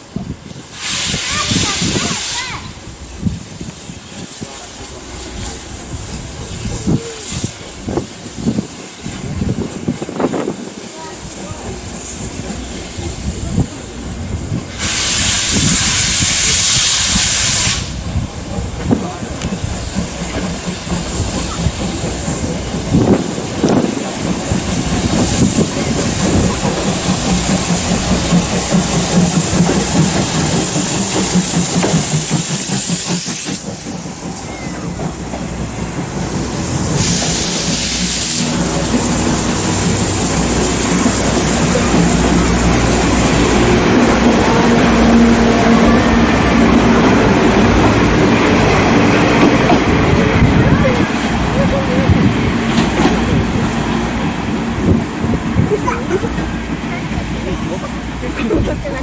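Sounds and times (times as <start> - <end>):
train rumbling at platform: 0.0 - 59.0
loud steady hiss: 0.4 - 44.5.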